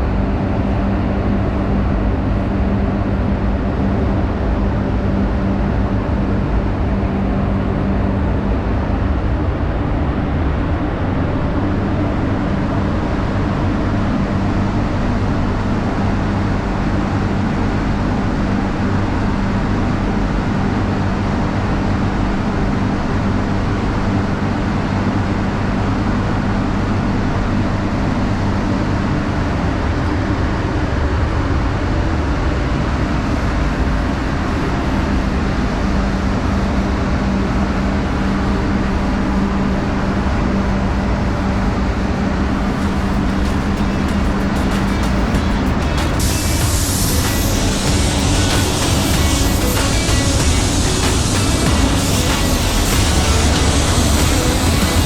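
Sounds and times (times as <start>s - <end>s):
low hum: 25.5s - 55.0s
spray booth fans rushing: 42.4s - 55.0s.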